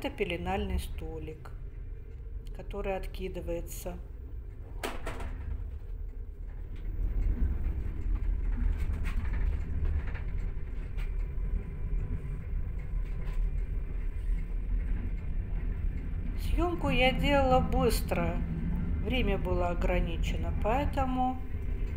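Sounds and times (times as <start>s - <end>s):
train rumble inside carriage: 0.0s - 21.9s.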